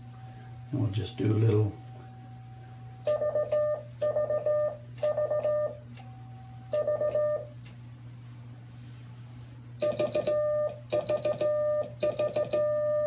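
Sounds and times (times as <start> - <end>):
morse code beeps: 3.1 - 5.8, 6.7 - 7.5, 9.8 - 13.0.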